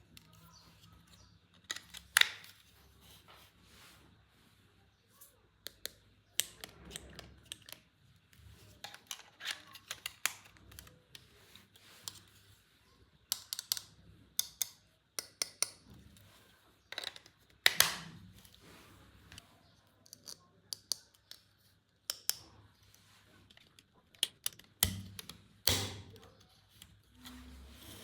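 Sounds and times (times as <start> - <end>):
packaging clicks and snips: 5.7 - 7.9, 8.7 - 11.4, 13.3 - 15.8.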